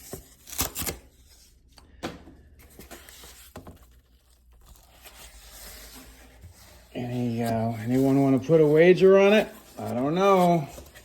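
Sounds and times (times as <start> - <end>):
plastic-wrapped record sleeve rustling: 2.7 - 11.0.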